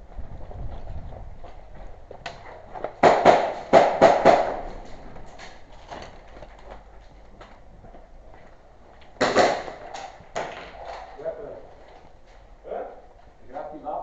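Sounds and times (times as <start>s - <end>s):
airsoft gun shots: 3.0s - 4.8s, 9.2s - 10.8s.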